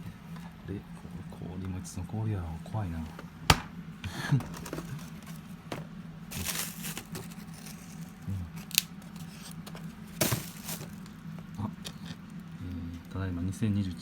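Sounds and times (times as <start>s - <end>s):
low steady hum: 0.0s - 14.0s
plastic packages crinkling: 4.3s - 12.4s.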